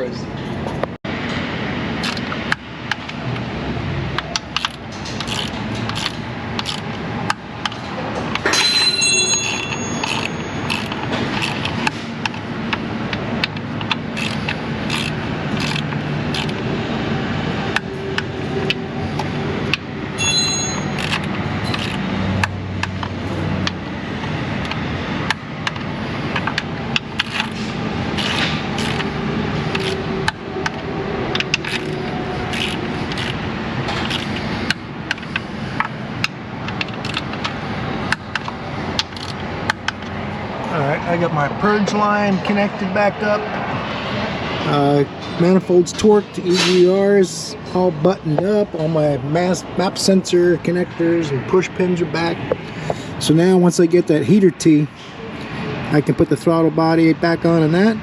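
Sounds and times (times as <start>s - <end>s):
ratchet clicking: 2.0s - 2.3s, 4.2s - 7.8s, 8.4s - 12.8s, 13.4s - 16.6s, 20.6s - 23.8s, 25.7s - 35.9s, 36.7s - 37.5s, 38.1s - 40.0s
tools scraping and tapping metal: 7.6s - 12.4s, 29.7s - 35.9s
high metallic rings: 8.4s - 11.6s, 20.2s - 21.8s.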